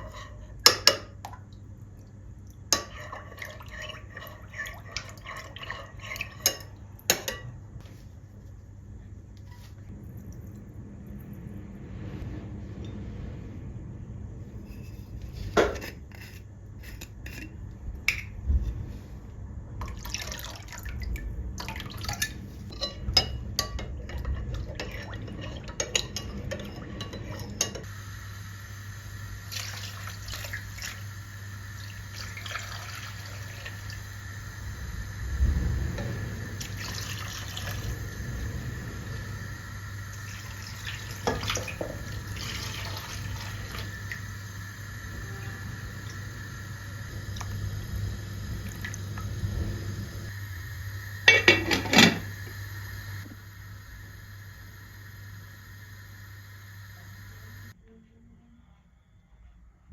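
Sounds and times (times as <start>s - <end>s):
tap water running: 0.0s - 7.5s, 19.8s - 57.8s
dishes clinking: 2.8s - 7.6s, 22.2s - 27.9s, 51.3s - 52.2s.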